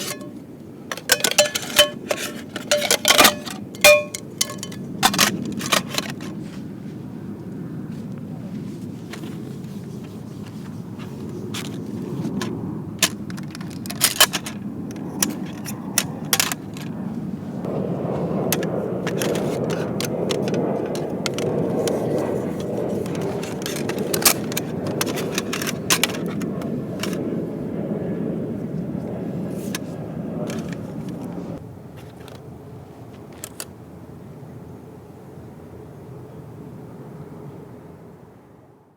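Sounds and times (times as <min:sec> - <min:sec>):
cookware clinking and scraping: 0:00.0 - 0:06.3.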